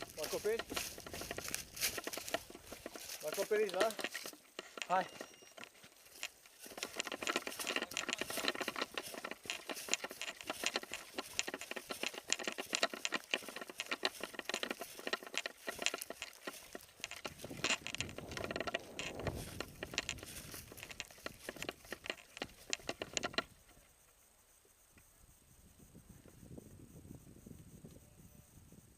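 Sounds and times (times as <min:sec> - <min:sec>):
hurried footsteps: 0:00.0 - 0:23.5
gear rattling and rustling: 0:00.0 - 0:23.9.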